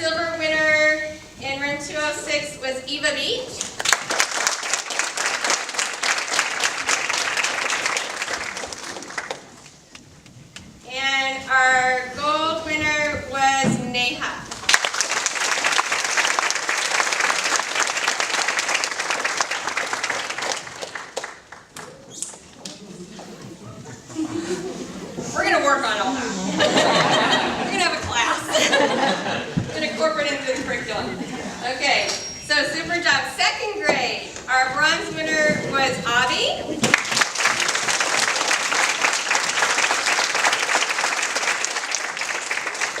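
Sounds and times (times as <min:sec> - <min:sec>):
audience applauding: 0:03.6 - 0:09.8, 0:14.5 - 0:22.8, 0:36.8 - 0:43.0.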